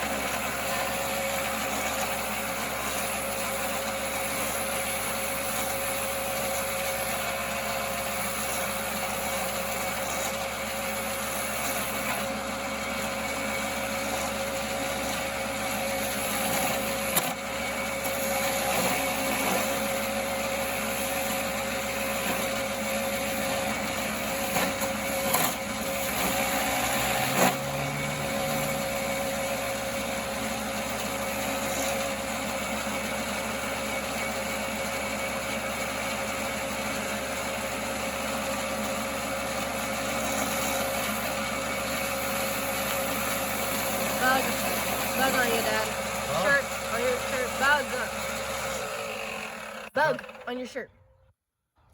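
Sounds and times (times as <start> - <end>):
wood lathe humming: 0.0 - 50.6.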